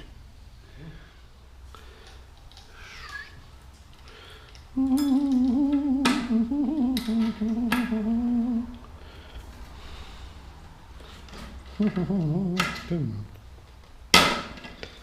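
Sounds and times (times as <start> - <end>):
man humming: 4.8 - 8.9, 11.7 - 13.4.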